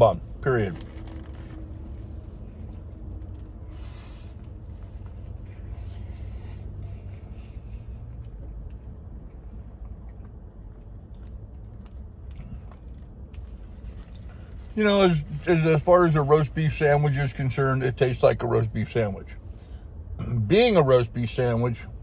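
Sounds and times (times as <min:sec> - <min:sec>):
low background rumble: 0:00.0 - 0:22.0
man chewing: 0:01.0 - 0:14.8.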